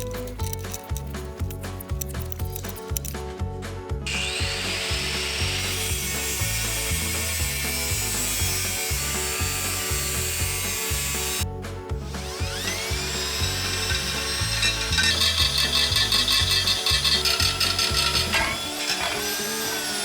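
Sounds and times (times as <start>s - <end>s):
power tool whining on metal: 4.1s - 11.4s, 12.0s - 20.0s.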